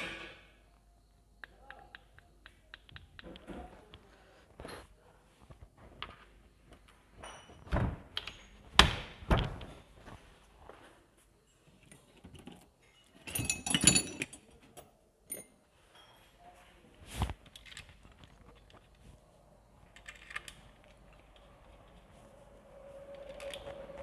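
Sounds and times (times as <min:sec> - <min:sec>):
small metallic clicks and clinks: 0:08.2 - 0:08.7, 0:11.8 - 0:16.3
metallic jangling: 0:13.2 - 0:14.4.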